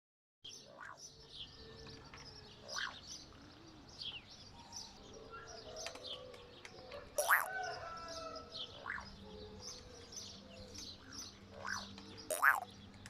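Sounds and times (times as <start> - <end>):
high bird chirps and whistles: 7.2 - 7.5, 12.3 - 12.6.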